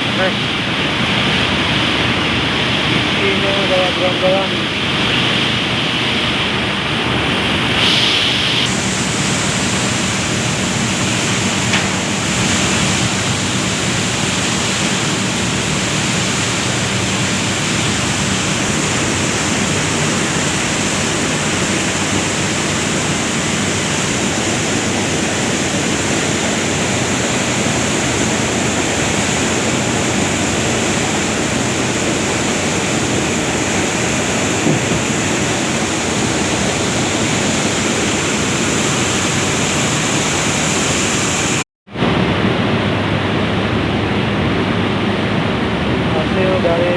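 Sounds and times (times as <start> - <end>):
mill machinery running: 0.0 - 46.9
bright hiss: 7.8 - 15.2.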